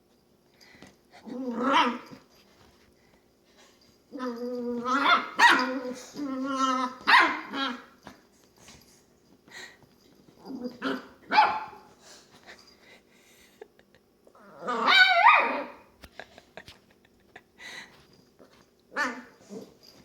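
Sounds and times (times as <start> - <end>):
puppy yapping and whining: 4.2 - 7.9, 14.6 - 15.9.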